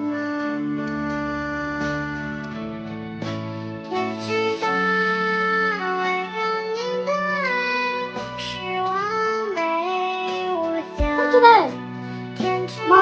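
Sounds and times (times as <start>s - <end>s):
slow sliding melody: 11.1s - 11.8s.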